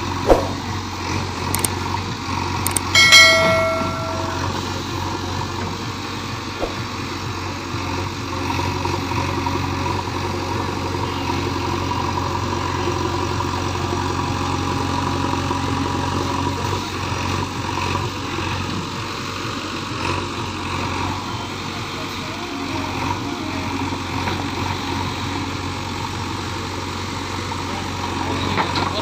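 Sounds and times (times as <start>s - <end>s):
diesel engine running: 0.0s - 3.0s, 4.4s - 29.0s
sharp knock: 0.3s - 0.6s.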